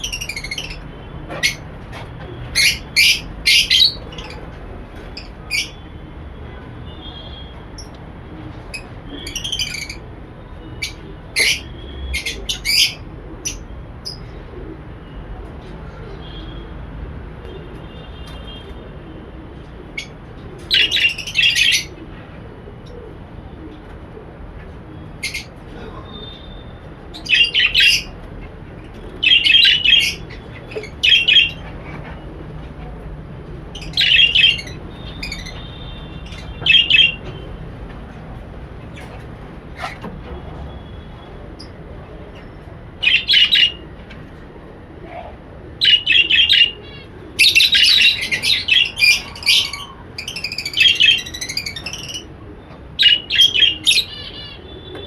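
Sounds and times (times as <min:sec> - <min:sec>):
parrots chirping and squawking: 0:00.0 - 0:05.9, 0:07.3 - 0:14.4, 0:19.9 - 0:22.0, 0:25.1 - 0:32.4, 0:33.7 - 0:37.5, 0:38.4 - 0:44.1, 0:45.8 - 0:52.3, 0:53.0 - 0:55.0.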